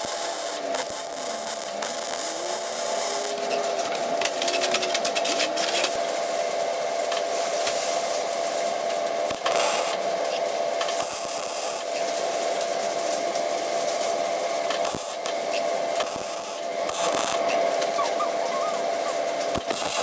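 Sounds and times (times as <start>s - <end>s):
welding crackling: 0.0s - 7.4s, 9.2s - 12.2s, 13.1s - 20.0s
welding hiss: 0.0s - 20.0s
steady hum: 15.2s - 20.0s.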